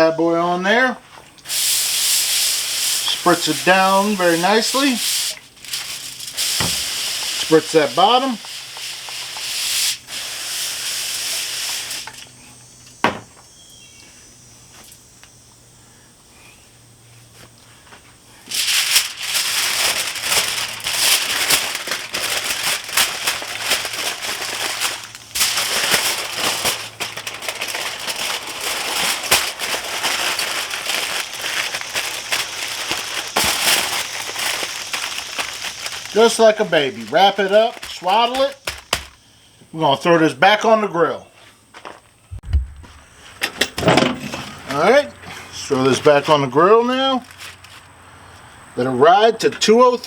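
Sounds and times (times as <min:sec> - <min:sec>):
spray bottle hissing: 0:01.4 - 0:07.5, 0:08.2 - 0:12.3
wrapping material crinkling: 0:01.5 - 0:12.2, 0:18.5 - 0:39.2, 0:47.2 - 0:47.9.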